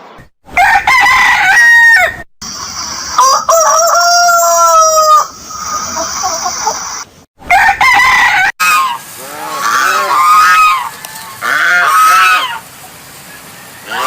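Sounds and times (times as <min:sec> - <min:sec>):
rooster crowing: 0:00.6 - 0:02.2, 0:03.2 - 0:06.2, 0:07.5 - 0:12.6, 0:13.5 - 0:14.0
hens clucking: 0:02.4 - 0:07.1, 0:08.0 - 0:14.0.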